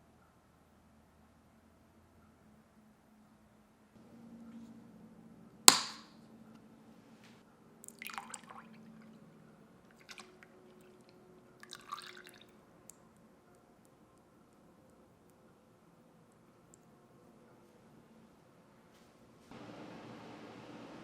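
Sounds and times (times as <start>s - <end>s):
liquid splashing: 7.8s - 9.2s, 9.9s - 12.5s.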